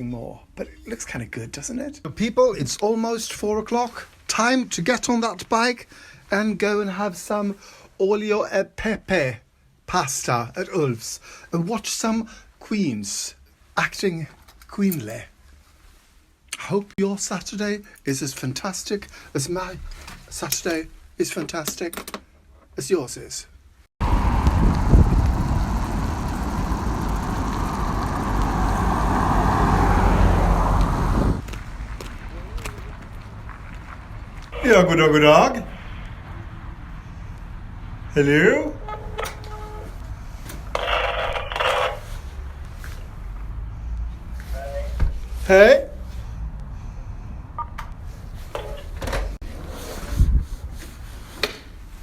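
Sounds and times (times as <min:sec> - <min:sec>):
wind buffeting microphone: 0:24.0 - 0:33.4
bicycle road noise rumble: 0:24.0 - 0:52.0.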